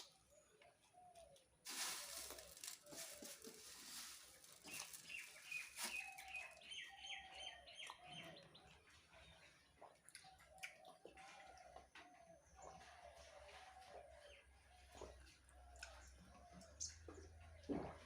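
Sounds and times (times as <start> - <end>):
crisp crackling noise: 1.6 - 6.7.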